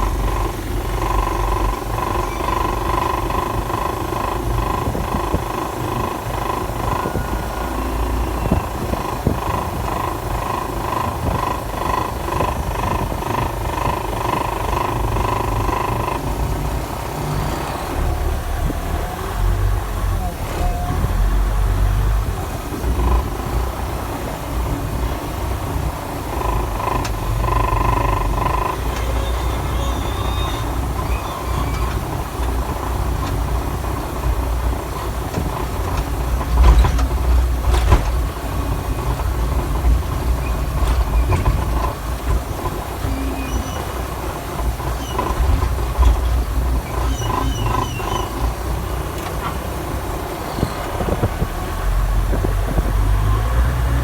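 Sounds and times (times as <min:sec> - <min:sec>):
diesel engine rumbling: 0:00.0 - 0:54.0
short high squeaks: 0:27.7 - 0:32.7, 0:43.0 - 0:49.6, 0:50.4 - 0:51.2.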